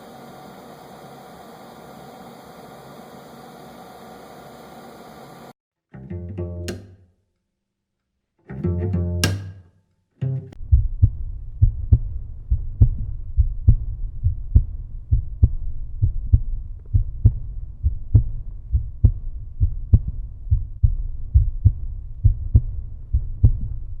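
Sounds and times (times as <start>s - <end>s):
bass and drum beat: 6.1s - 7.0s, 8.5s - 9.6s, 10.2s - 24.0s.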